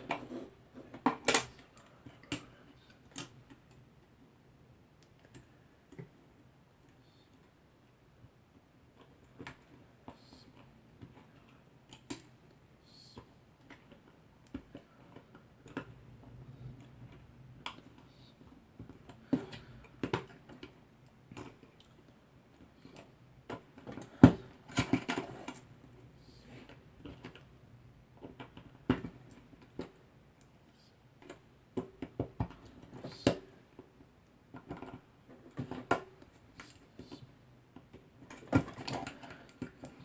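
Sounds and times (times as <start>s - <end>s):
clicks and handling noises: 0.0s - 3.9s, 8.6s - 40.0s.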